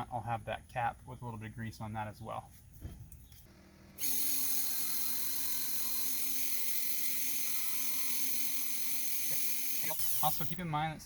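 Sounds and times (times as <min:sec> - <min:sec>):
power drill wire brush scrubbing: 0:04.0 - 0:10.6.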